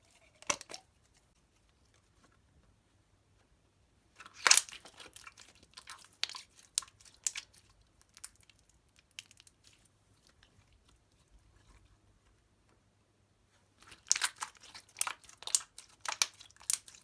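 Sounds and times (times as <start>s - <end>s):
slime crunching and crackling: 4.2s - 11.0s, 13.8s - 17.0s.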